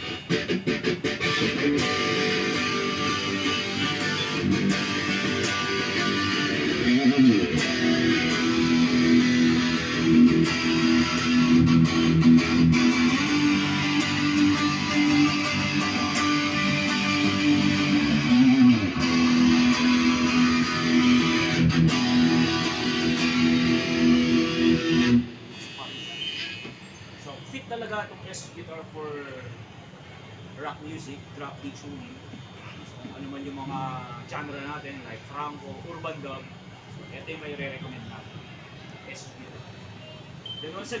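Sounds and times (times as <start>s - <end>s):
distorted electric guitar chords: 0.0s - 25.5s.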